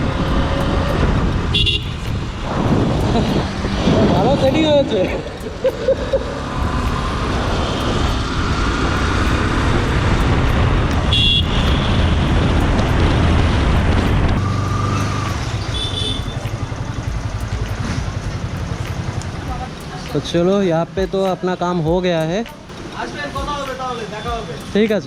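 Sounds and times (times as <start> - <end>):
motorcycle engine and road rumble: 0.0 - 24.5
vehicle horn toots: 1.5 - 2.0, 11.1 - 12.1, 15.6 - 16.4.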